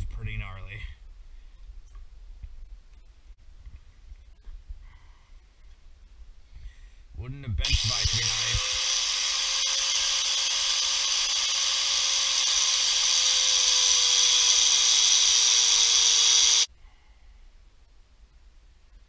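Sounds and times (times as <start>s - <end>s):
power tool motor whine: 7.6s - 16.7s.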